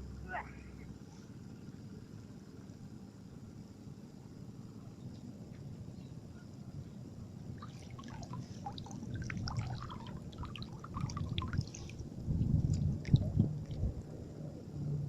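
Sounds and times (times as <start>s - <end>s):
low rumble with steady hum: 0.0s - 15.0s
water dripping and trickling: 7.6s - 14.2s.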